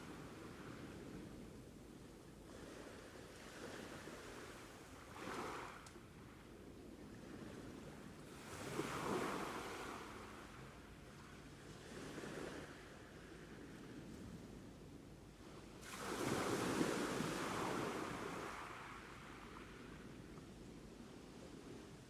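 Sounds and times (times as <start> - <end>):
sea waves breaking on shore: 2.5 - 5.8, 7.2 - 14.1, 15.4 - 20.2.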